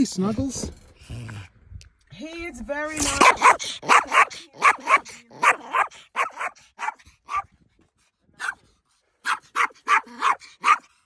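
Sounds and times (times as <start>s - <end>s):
dog barking: 3.0s - 7.5s, 8.4s - 8.6s, 9.2s - 10.9s.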